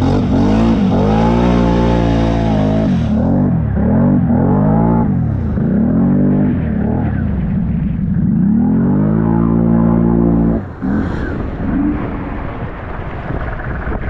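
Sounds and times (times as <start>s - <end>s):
atv engine revving: 0.0s - 12.6s.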